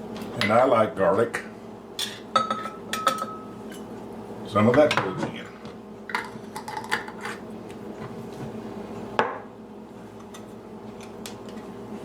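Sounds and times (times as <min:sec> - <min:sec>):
utensils clinking on cooking pot: 0:02.0 - 0:03.5.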